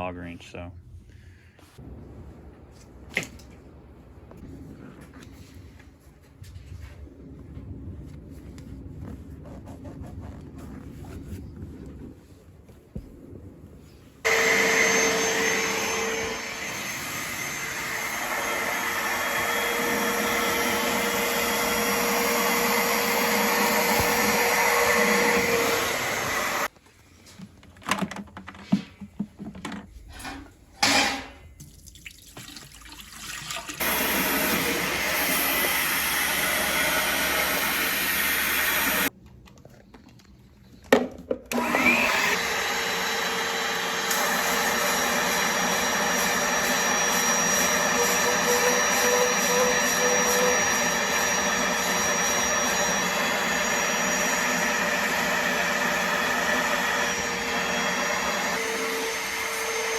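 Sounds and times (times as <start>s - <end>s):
vacuum cleaner whining: 14.2s - 26.7s, 33.8s - 39.1s, 41.5s - 59.9s.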